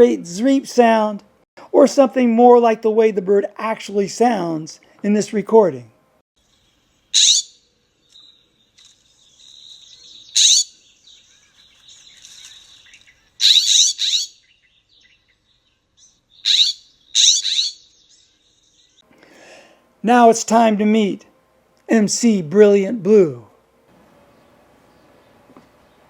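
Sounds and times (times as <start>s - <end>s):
jay calling: 7.1s - 8.4s, 9.4s - 15.3s, 16.0s - 18.1s.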